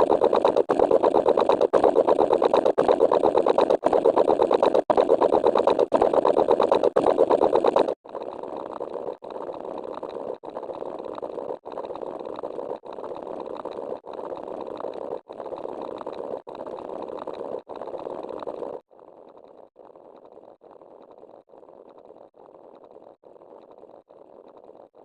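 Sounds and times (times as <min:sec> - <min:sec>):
buzzing motor-like sound effect: 0:00.0 - 0:18.8.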